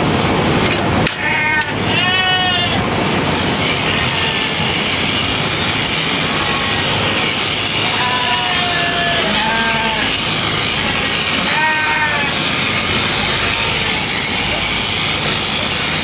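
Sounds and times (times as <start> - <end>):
steady rushing noise: 0.0 - 16.0
sheep bleating: 1.2 - 2.8, 7.7 - 10.3, 11.0 - 12.5.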